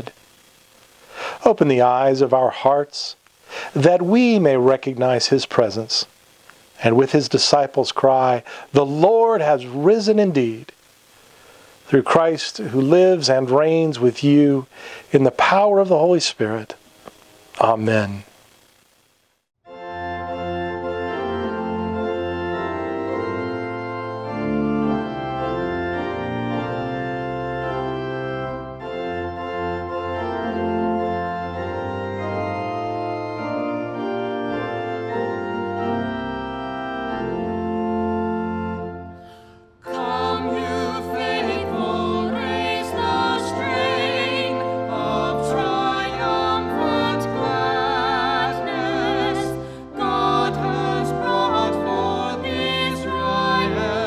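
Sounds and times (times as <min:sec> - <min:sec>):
organ playing chords: 0:00.0 - 0:18.2, 0:19.7 - 0:54.0.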